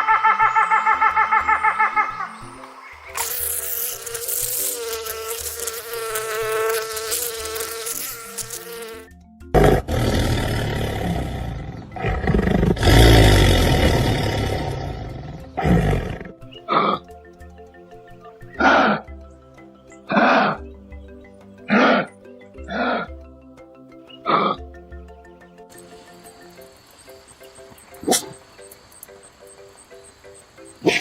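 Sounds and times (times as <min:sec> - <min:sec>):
animal calls: 0:00.0 - 0:03.4, 0:09.6 - 0:17.1, 0:18.5 - 0:19.2, 0:20.1 - 0:20.7, 0:21.6 - 0:23.2, 0:24.1 - 0:24.7, 0:25.8 - 0:31.0
background music: 0:00.0 - 0:31.0.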